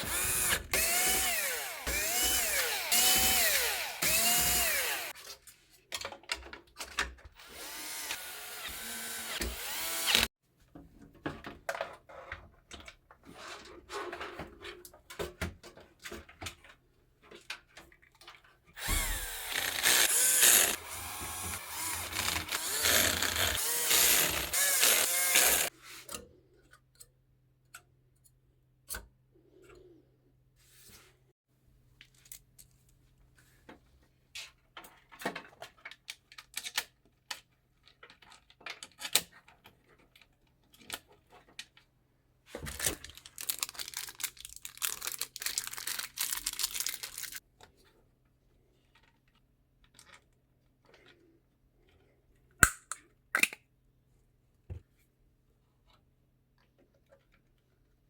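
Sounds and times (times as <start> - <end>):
electric screwdriver running: 0.0 - 5.1, 7.4 - 10.3, 18.8 - 25.7.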